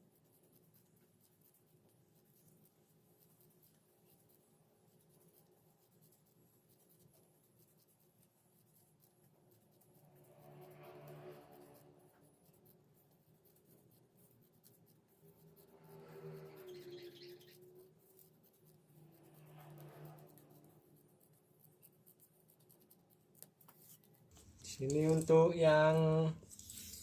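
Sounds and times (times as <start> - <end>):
plastic sheet crinkling: 24.3 - 27.0.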